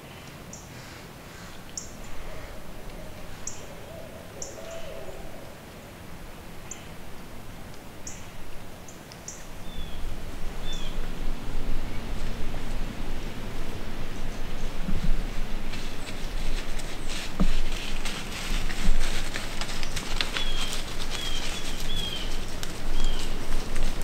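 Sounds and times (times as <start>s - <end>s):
owl hooting: 1.8s - 5.7s
low rumble: 9.6s - 16.8s.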